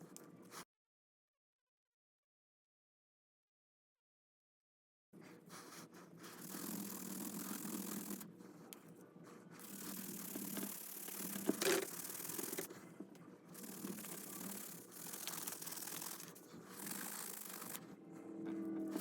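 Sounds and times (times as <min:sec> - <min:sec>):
brush scrubbing leather: 0:06.3 - 0:08.2, 0:13.6 - 0:17.9.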